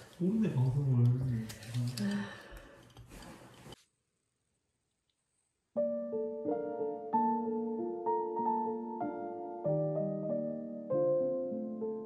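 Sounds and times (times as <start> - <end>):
gentle piano chords: 5.8 - 12.0.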